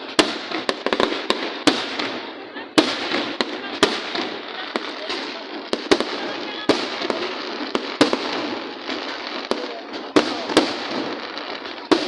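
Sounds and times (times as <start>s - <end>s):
fireworks bangs: 0.0s - 12.0s
fireworks crackling: 0.0s - 12.0s.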